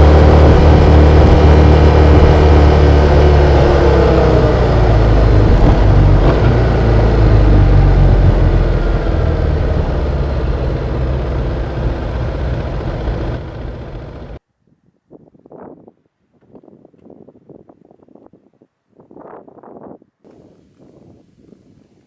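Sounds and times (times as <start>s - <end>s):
motorcycle engine running: 0.0s - 14.4s.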